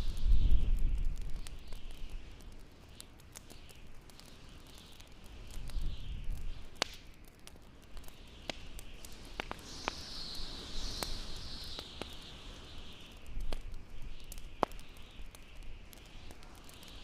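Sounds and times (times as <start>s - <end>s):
hissing winter wind: 0.0s - 17.0s
wood fire crackling: 0.0s - 17.0s
sharp pops: 6.5s - 7.1s, 8.0s - 12.3s.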